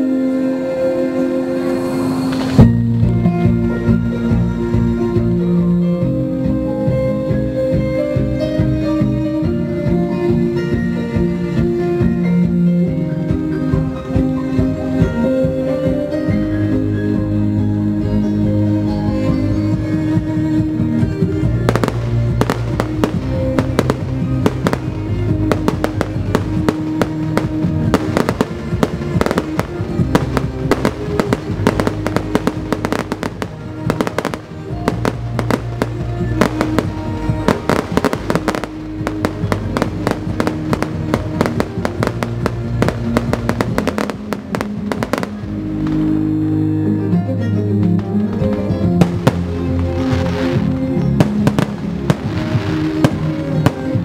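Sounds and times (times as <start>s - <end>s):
music with sustained notes: 0.0s - 54.0s
fireworks bangs and crackles: 21.2s - 46.1s, 48.2s - 54.0s.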